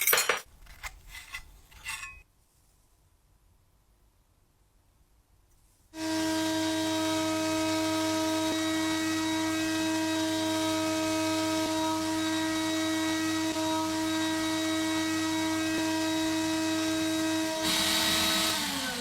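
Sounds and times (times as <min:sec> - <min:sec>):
small electric motor whining: 0:06.0 - 0:19.0.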